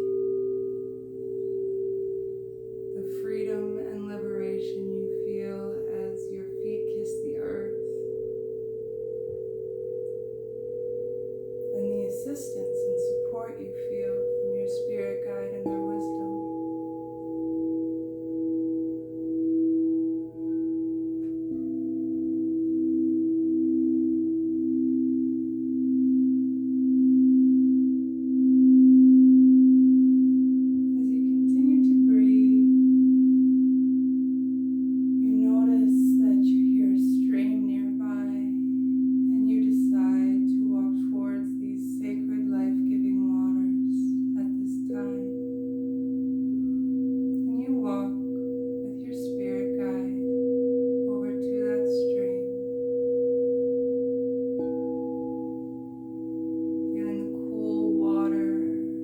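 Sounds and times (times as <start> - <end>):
singing bowls ringing: 0.0 - 59.0
soft wordless vocals: 2.7 - 9.7, 11.3 - 17.8, 47.2 - 52.8, 56.9 - 59.0.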